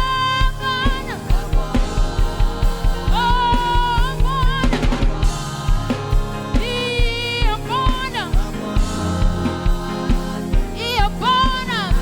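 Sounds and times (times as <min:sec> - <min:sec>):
drum kit beat: 0:00.0 - 0:12.0
person singing: 0:00.0 - 0:12.0.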